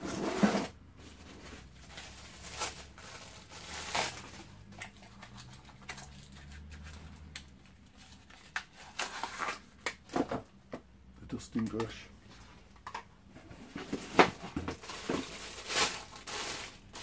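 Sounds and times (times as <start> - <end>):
plastic packaging crinkling: 1.1 - 9.9, 13.9 - 17.0.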